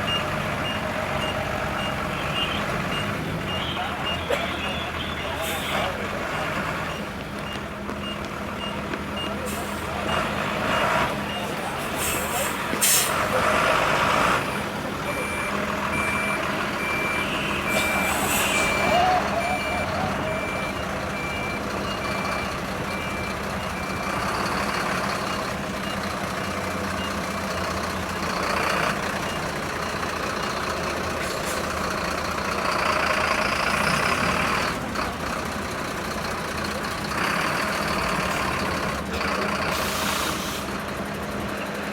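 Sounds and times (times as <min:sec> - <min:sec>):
diesel engine running: 0:00.0 - 0:41.9
reversing alarm beeping: 0:00.1 - 0:05.8, 0:13.7 - 0:27.4.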